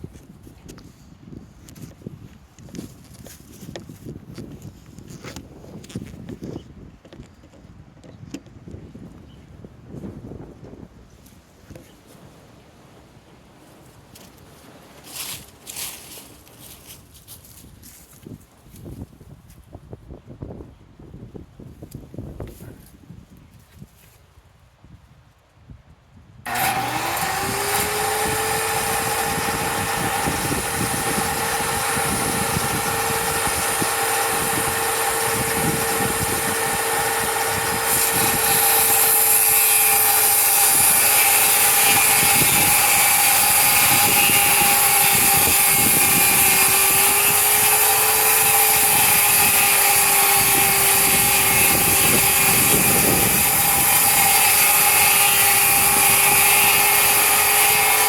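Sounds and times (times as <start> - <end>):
power tool motor whining: 26.5 - 58.0.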